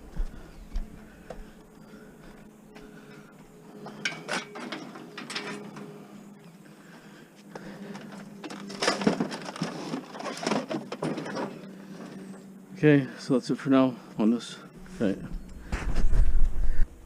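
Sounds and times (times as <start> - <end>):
faint steady hum: 0.0 - 17.0
printer parts clattering: 4.0 - 5.9, 7.9 - 11.6.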